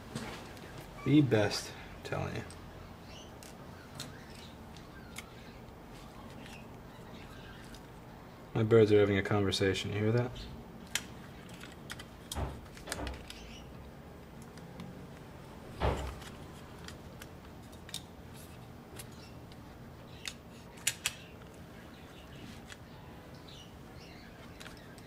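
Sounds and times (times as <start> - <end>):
pet birds chirping: 2.2 - 8.5, 10.2 - 10.7, 12.4 - 13.9, 18.4 - 25.0.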